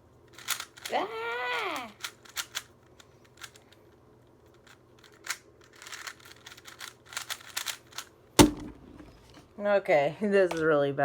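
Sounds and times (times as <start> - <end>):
plastic puzzle cube clicking: 0.3 - 3.8, 4.5 - 8.1.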